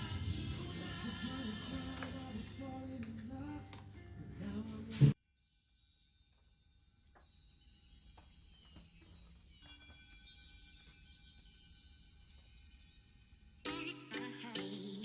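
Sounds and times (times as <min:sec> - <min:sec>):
chiming background music: 0:05.1 - 0:15.0.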